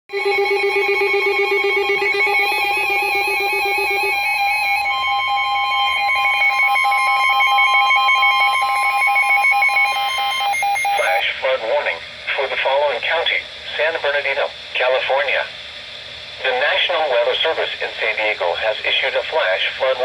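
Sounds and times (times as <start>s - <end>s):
pulsing electronic alarm: 0.1s - 11.2s
steady high alarm tone: 0.1s - 11.3s.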